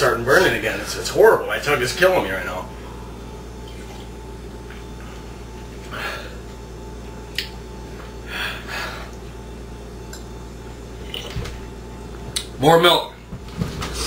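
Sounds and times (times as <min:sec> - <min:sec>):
steady low hum: 0:00.0 - 0:14.0
man gasping breathily: 0:08.3 - 0:09.1.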